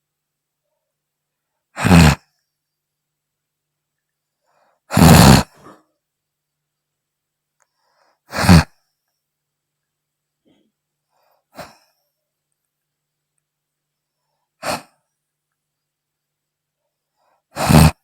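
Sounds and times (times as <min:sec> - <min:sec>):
woman snoring: 0:01.8 - 0:02.3, 0:04.9 - 0:05.8, 0:08.3 - 0:08.8, 0:14.6 - 0:15.0, 0:17.5 - 0:18.0.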